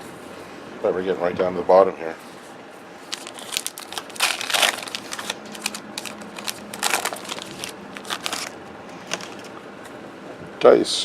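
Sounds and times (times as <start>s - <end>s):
card pack wrappers crinkling: 3.0s - 9.6s.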